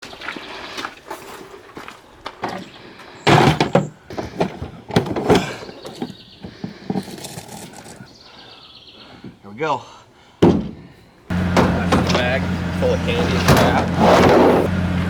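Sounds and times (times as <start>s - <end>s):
knocks and thuds: 10.4s - 15.0s.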